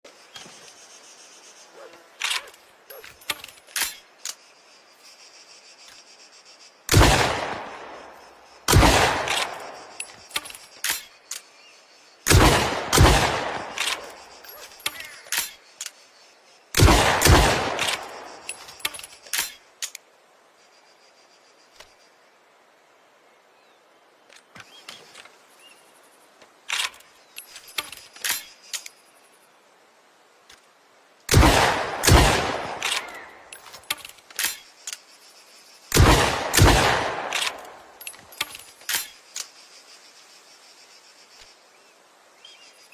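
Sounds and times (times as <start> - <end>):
shotgun shots with echo: 6.9 - 7.8, 8.7 - 9.7, 12.3 - 13.8, 16.8 - 18.2, 31.3 - 33.1, 35.9 - 37.6
shotgun clicks and clacks: 32.1 - 35.0, 36.0 - 39.5.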